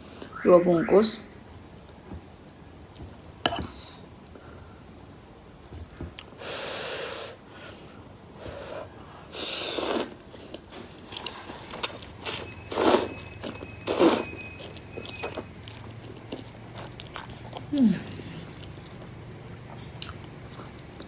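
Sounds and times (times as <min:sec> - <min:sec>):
slurping noodles: 0:08.7 - 0:10.3, 0:11.2 - 0:13.2, 0:13.9 - 0:14.4.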